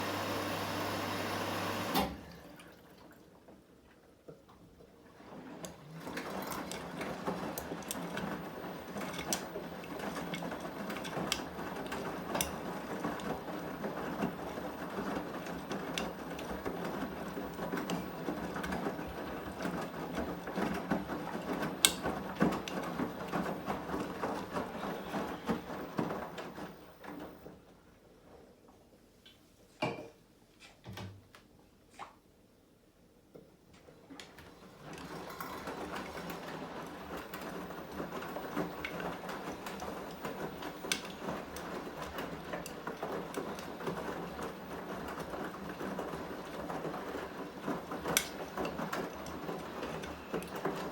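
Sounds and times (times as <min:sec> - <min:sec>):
appliance rattling and grinding: 0:05.2 - 0:26.5, 0:34.5 - 0:50.9.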